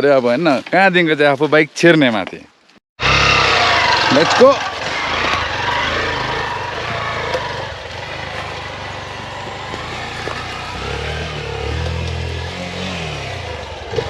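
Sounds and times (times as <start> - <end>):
motorcycle engine revving: 3.0 - 14.0.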